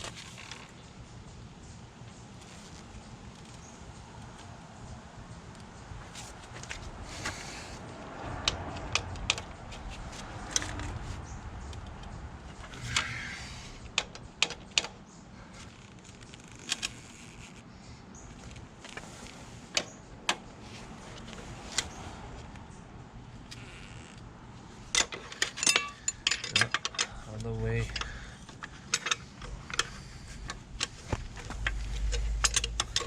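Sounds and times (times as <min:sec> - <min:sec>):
hand tool metallic clicks: 0:31.5 - 0:33.0.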